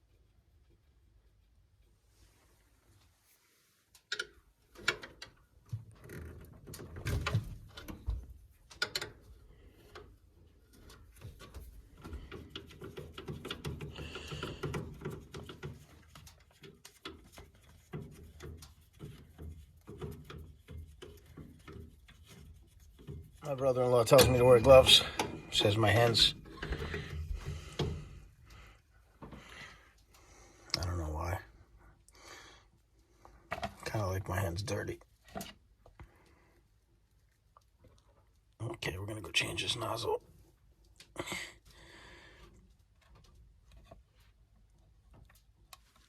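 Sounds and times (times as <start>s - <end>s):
irregular knocks and clatter: 4.1s - 30.4s.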